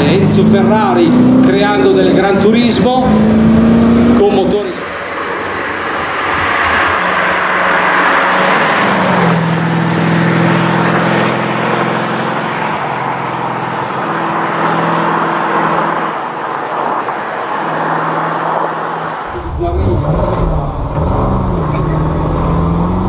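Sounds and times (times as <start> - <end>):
car engine running steadily: 18.6 - 23.0.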